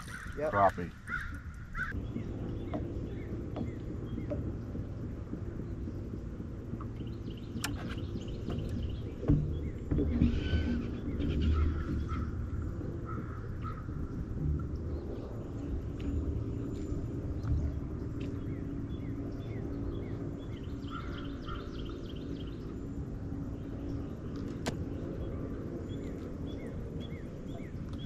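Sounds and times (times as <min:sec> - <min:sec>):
steady low rumble: 0:00.0 - 0:28.0
bird chirps: 0:17.5 - 0:22.8.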